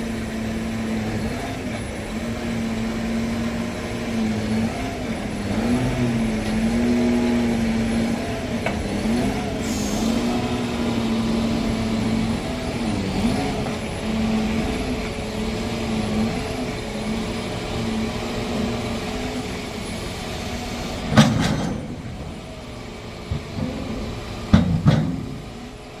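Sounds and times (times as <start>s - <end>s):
vehicle engine humming: 0.0s - 26.0s
loud knocks: 24.5s - 25.5s.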